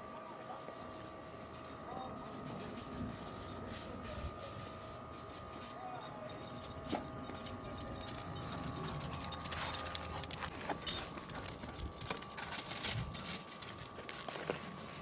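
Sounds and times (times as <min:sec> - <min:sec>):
footsteps: 0:00.5 - 0:15.0
dog collar tags jingling: 0:06.0 - 0:14.5.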